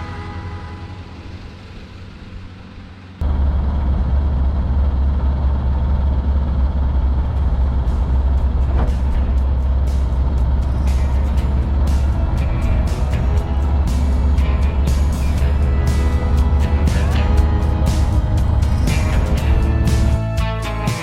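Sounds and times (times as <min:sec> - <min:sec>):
background music: 0:00.0 - 0:01.8, 0:07.8 - 0:21.0
moving vehicle rumble: 0:00.0 - 0:21.0.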